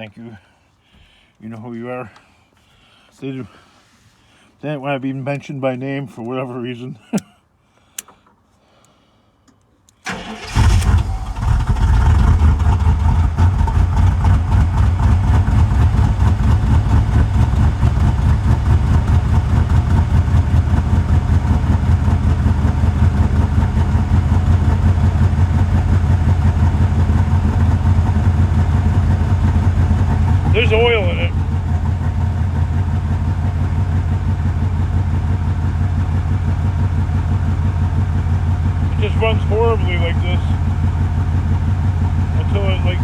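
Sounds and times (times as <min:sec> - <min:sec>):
person talking: 0:04.6 - 0:07.1, 0:30.5 - 0:31.4, 0:38.9 - 0:40.6, 0:42.4 - 0:43.0
faint click: 0:07.9 - 0:10.0
car engine starting and idling: 0:10.0 - 0:43.0.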